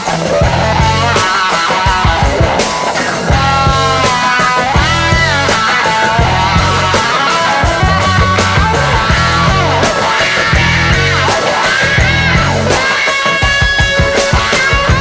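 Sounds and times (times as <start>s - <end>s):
rock music: 0.0s - 15.0s.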